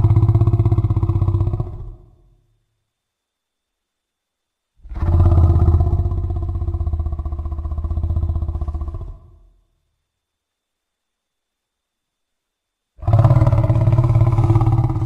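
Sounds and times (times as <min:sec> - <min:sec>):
low pulsing monster growl: 0:00.0 - 0:02.2, 0:04.8 - 0:09.5, 0:13.0 - 0:15.0.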